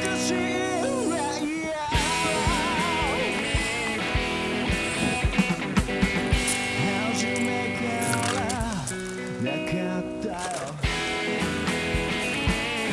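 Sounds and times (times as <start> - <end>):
rock music with guitar: 0.0 - 12.9
low thumping beat: 2.0 - 6.8, 10.8 - 12.9.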